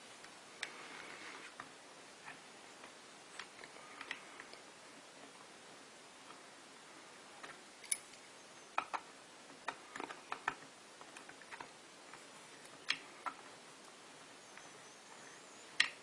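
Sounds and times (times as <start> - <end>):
faint steady hiss: 0.0 - 16.0
light clicks and taps of small parts: 15.8 - 16.0.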